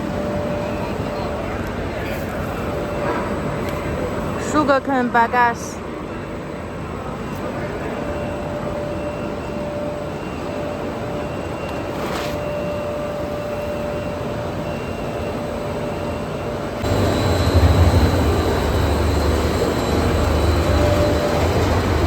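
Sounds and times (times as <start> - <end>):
machine hum and rumble: 16.6 - 22.0.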